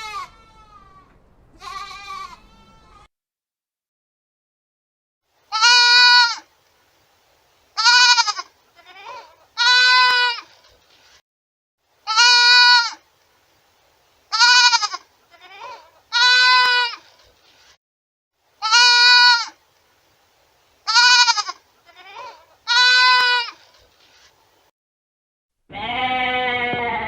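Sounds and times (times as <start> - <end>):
goat bleating: 0.0 - 3.1, 5.5 - 6.5, 7.8 - 10.6, 12.0 - 13.0, 14.3 - 17.2, 18.6 - 19.6, 20.8 - 23.7, 25.7 - 27.0.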